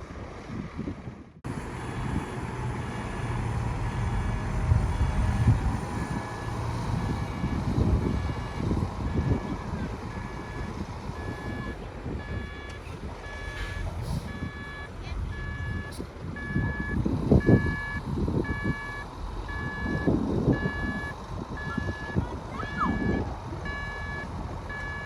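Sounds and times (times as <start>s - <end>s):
engine rumble: 0.0s - 25.0s
reversing alarm beeping: 6.0s - 25.0s.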